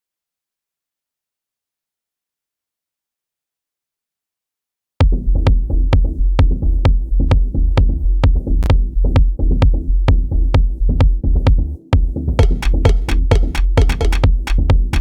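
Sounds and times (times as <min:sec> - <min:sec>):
drum hits: 0:12.0 - 0:15.0.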